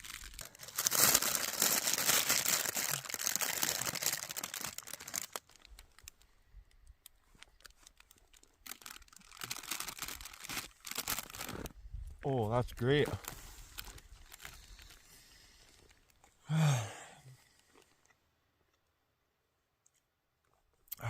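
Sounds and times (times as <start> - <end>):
wrapper crinkling and tearing: 0.0 - 6.2, 7.2 - 11.7, 13.0 - 15.1.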